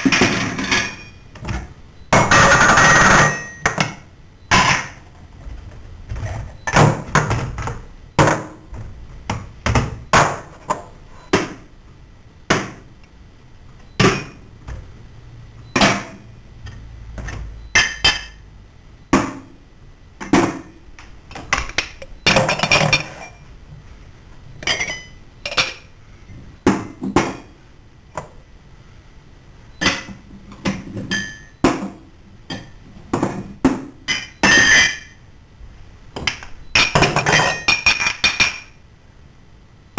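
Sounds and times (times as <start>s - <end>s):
kitchenware clanking: 0.0s - 5.0s, 13.9s - 14.4s, 17.2s - 18.4s, 21.4s - 23.4s, 24.6s - 25.9s, 29.8s - 35.2s, 36.2s - 38.8s.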